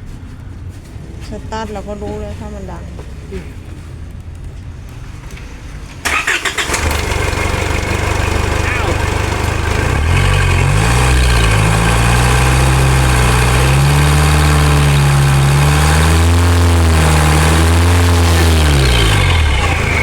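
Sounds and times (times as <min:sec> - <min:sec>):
diesel engine revving: 0:00.8 - 0:20.0.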